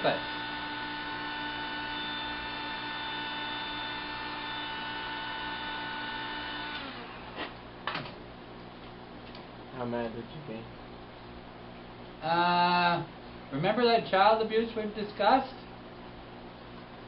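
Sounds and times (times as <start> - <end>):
heat gun whining: 0.0 - 7.5.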